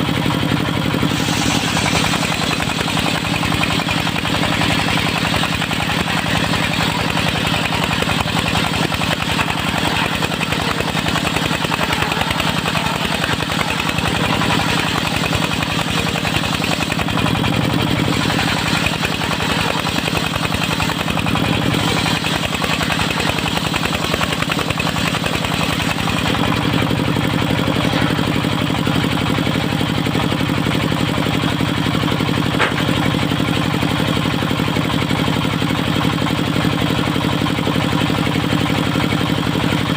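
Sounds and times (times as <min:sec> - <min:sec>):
sawmill engine running: 0:00.0 - 0:39.9
mechanical hiss and clatter: 0:01.1 - 0:04.2.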